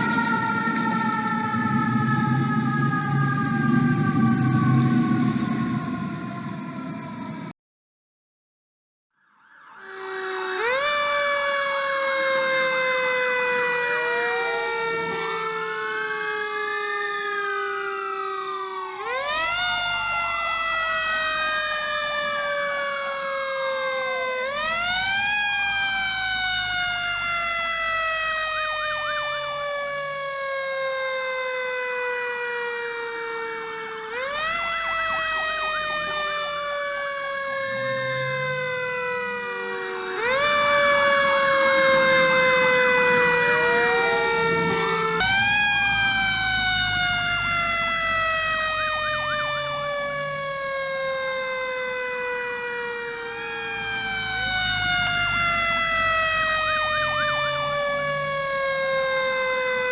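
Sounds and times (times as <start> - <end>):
siren sliding down: 0.0 - 7.5, 9.1 - 59.9
siren sweeping up and down: 0.0 - 7.5, 9.1 - 59.9.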